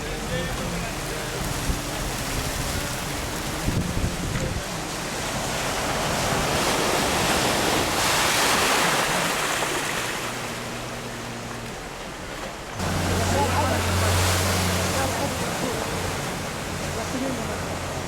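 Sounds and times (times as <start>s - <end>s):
heavy rain pouring: 0.0s - 7.0s, 12.8s - 18.0s
strong wind gusts: 0.8s - 10.7s.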